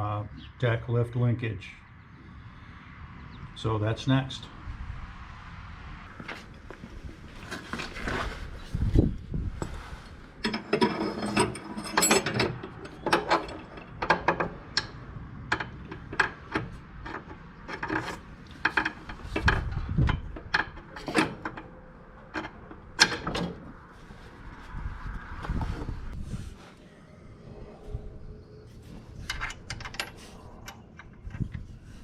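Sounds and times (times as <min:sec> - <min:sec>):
metal tools clanking: 0:10.4 - 0:23.7, 0:28.8 - 0:32.0.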